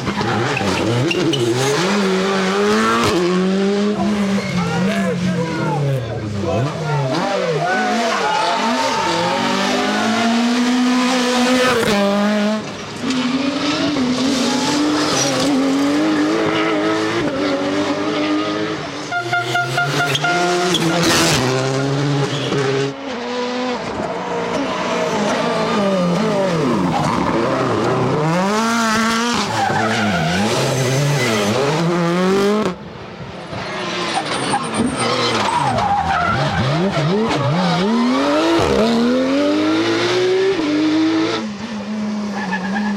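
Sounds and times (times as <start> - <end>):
rally car engines revving: 0.0 - 42.9
tyre squeal: 0.1 - 1.8, 33.5 - 38.7.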